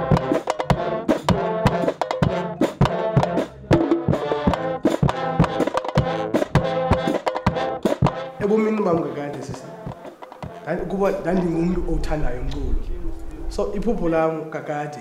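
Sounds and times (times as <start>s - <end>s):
brass instrument melody: 0.0s - 11.9s
drums and percussion: 0.0s - 13.6s.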